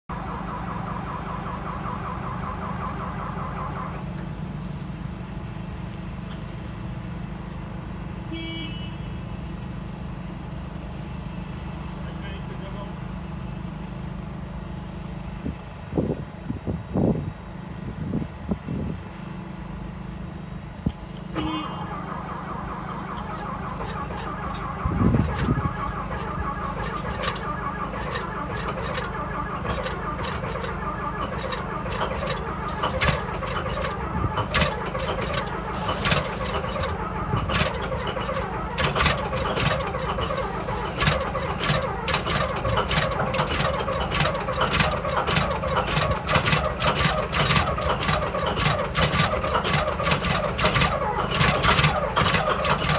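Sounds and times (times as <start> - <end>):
tank diesel engine rumbling: 0.0 - 52.9
short beep: 21.0 - 29.7
pulsing tone: 21.0 - 43.6
sharp clicks: 23.0 - 40.4.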